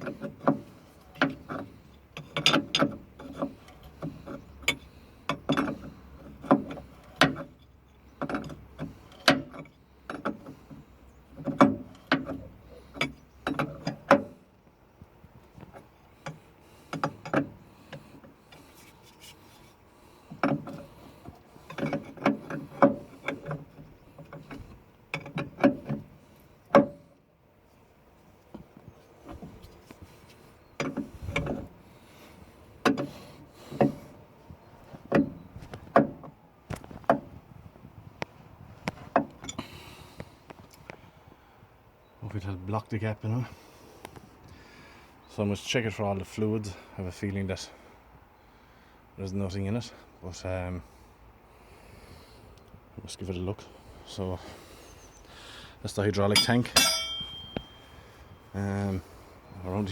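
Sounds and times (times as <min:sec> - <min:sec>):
spanners clinking on metal: 0:56.3 - 0:58.5.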